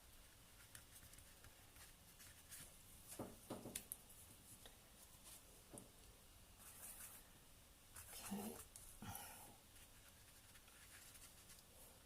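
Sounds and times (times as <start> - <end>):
paintbrush scratching on canvas: 8.0 - 8.9, 9.8 - 11.6.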